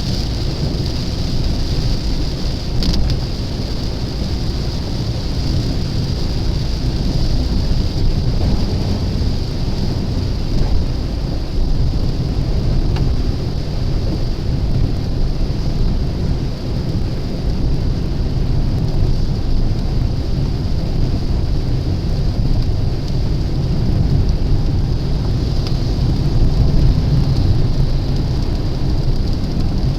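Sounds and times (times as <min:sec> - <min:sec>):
car driving rumble: 0:00.0 - 0:29.9
rain hiss: 0:00.0 - 0:29.9.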